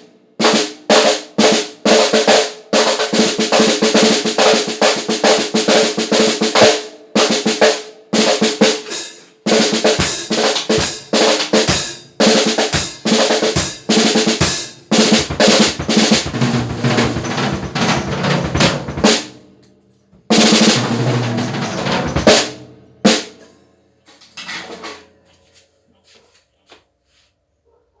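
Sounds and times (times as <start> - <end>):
snare drum strokes and rolls: 0.4 - 19.4, 20.3 - 23.3.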